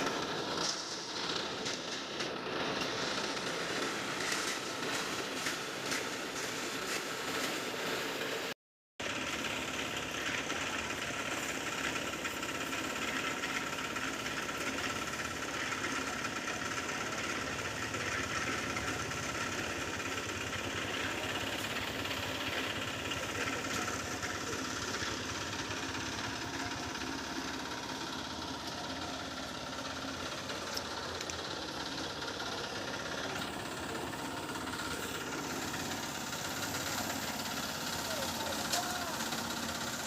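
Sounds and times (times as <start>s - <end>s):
concrete mixer engine rattling: 0.0s - 40.0s.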